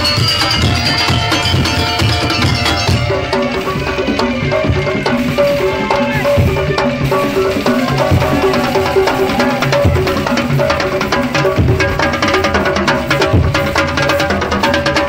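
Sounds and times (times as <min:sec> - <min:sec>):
parade percussion music: 0:00.0 - 0:15.0.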